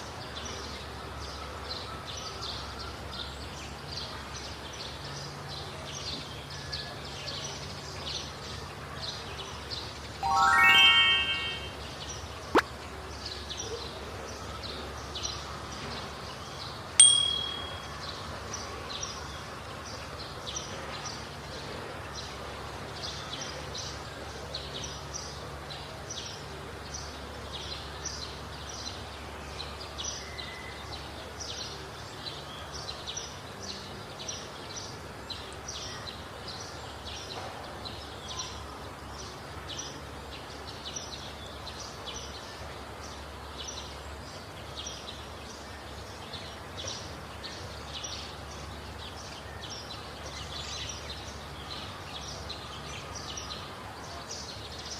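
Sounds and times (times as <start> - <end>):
low steady hiss: 0.0 - 13.6, 14.7 - 54.9
bright ding: 10.2 - 11.8, 17.0 - 18.1
high tinkles: 10.2 - 11.8, 17.0 - 18.1.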